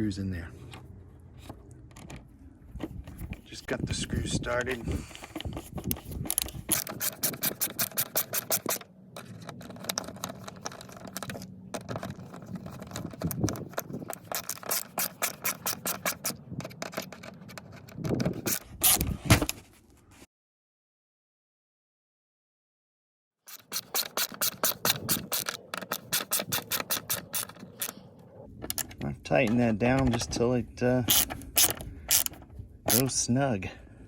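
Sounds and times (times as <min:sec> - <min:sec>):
screw scraping: 0:01.4 - 0:19.5, 0:23.5 - 0:33.2
screwdriver clicking: 0:04.7 - 0:19.2, 0:23.5 - 0:28.0, 0:31.1 - 0:33.1
screw knocks: 0:05.2 - 0:19.0, 0:23.5 - 0:27.9, 0:31.1 - 0:33.0.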